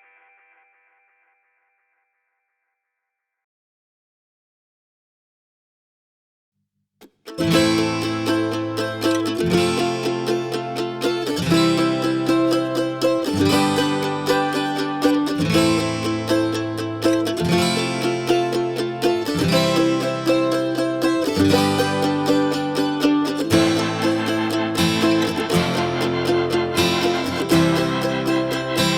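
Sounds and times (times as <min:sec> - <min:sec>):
instrumental background music: 0:07.4 - 0:28.9.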